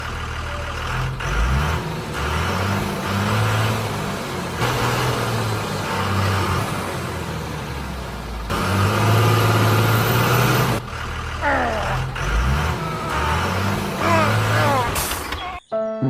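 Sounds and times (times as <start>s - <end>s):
vehicle engine running: 0.0s - 15.6s.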